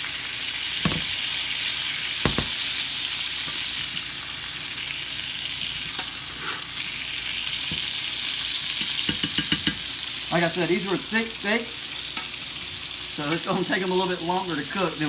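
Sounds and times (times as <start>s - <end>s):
steaks sizzling in a skillet: 0.0s - 15.0s
light knock: 2.3s - 2.6s.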